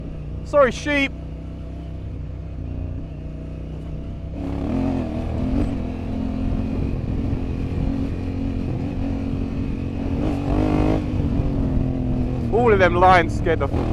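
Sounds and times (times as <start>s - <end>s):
motorcycle engine revving: 0.0s - 13.9s.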